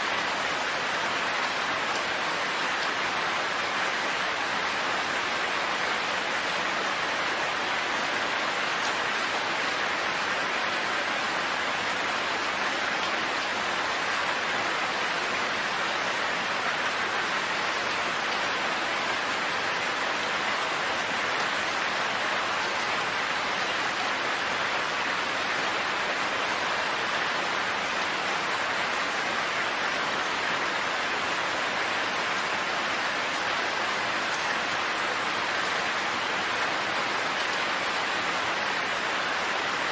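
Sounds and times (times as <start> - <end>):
steady rainfall: 0.0 - 39.9.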